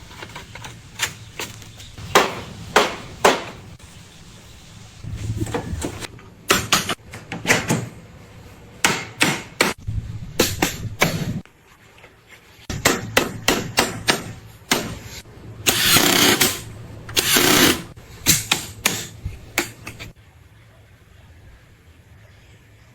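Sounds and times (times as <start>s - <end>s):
hammering on bamboo: 2.0s - 3.7s, 8.8s - 9.8s, 12.7s - 15.1s, 17.2s - 20.0s.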